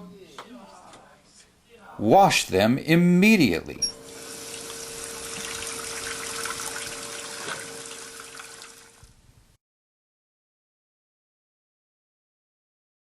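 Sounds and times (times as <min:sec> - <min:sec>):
water running from a tap: 0:04.0 - 0:09.1.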